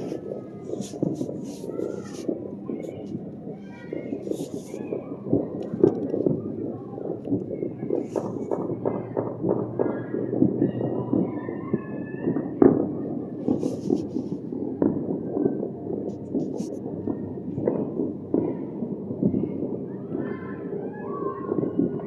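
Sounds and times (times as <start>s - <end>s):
fireworks popping and crackling: 0.0s - 20.8s, 21.4s - 22.0s.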